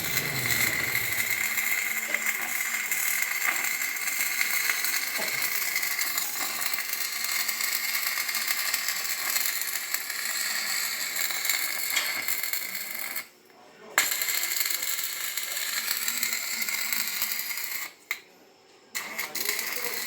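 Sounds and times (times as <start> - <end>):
steady high hiss: 0.0 - 1.8.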